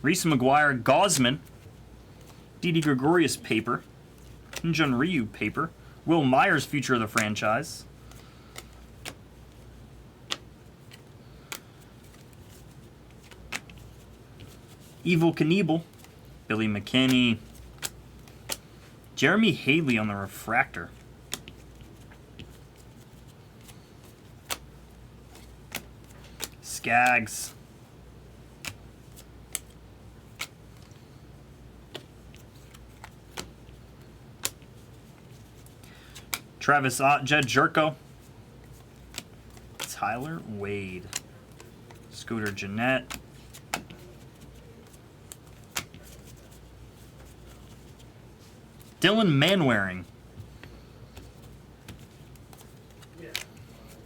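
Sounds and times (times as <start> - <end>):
trading cards clicking and snapping: 1.0 - 1.5, 4.2 - 4.9, 6.6 - 7.4, 8.0 - 9.6, 10.2 - 16.2, 16.8 - 18.8, 20.9 - 27.4, 28.5 - 31.1, 31.9 - 36.5, 38.7 - 46.6, 50.6 - 54.0.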